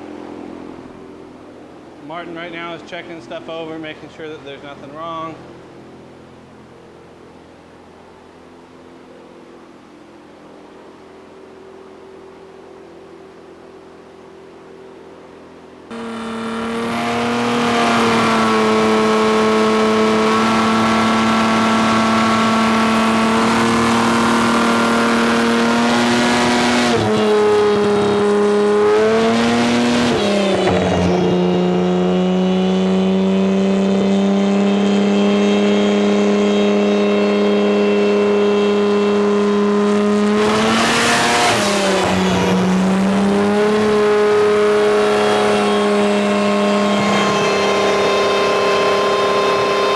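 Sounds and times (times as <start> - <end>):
car engine revving on dynamometer: 15.9 - 49.9.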